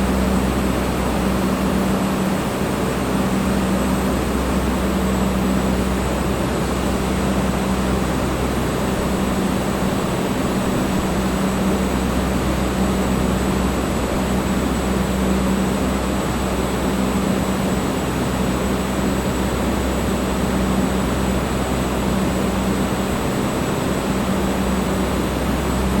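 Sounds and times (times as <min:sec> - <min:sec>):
electric fan whooshing air: 0:00.0 - 0:26.0
low motor hum: 0:00.0 - 0:26.0.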